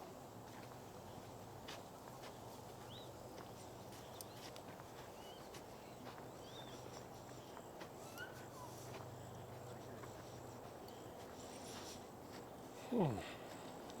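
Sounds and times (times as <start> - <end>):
footsteps on trail: 0.4 - 14.0.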